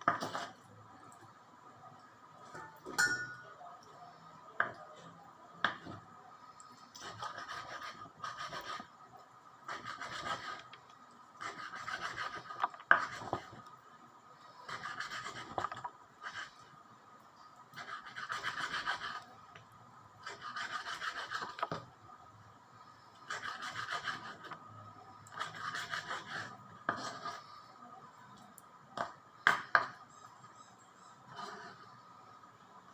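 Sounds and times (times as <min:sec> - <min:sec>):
utensil scraping strokes: 0:07.0 - 0:08.9, 0:09.7 - 0:10.8, 0:11.4 - 0:13.6, 0:14.5 - 0:16.7, 0:17.8 - 0:19.3, 0:20.2 - 0:21.8, 0:23.2 - 0:24.6, 0:25.3 - 0:27.7, 0:30.1 - 0:32.0.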